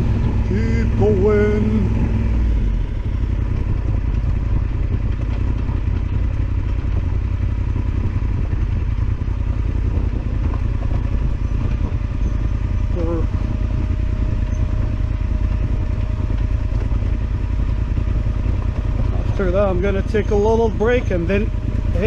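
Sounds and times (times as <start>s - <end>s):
motorcycle engine running: 0.0s - 22.0s.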